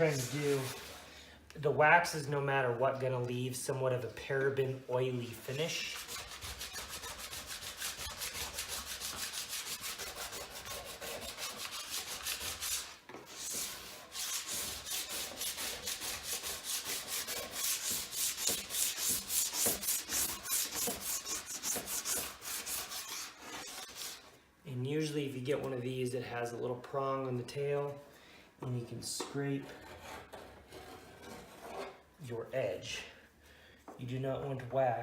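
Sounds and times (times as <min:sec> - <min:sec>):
wax scraper scraping snowboard: 0:00.0 - 0:01.1, 0:05.5 - 0:24.3.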